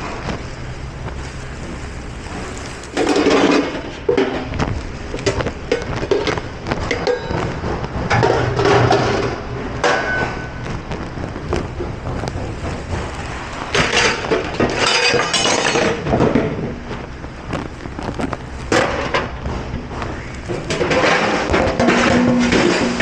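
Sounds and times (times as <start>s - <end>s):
hissing water spray: 0.0s - 8.0s, 10.4s - 15.8s
dishes clinking and clattering: 5.2s - 10.7s, 11.6s - 16.9s, 18.2s - 23.0s.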